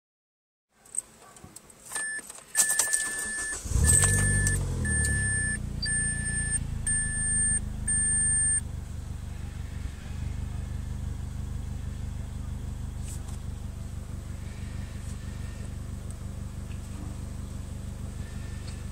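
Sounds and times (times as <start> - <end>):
dashboard chime beeping: 2.0 - 8.6
car engine starting and idling: 2.0 - 18.9.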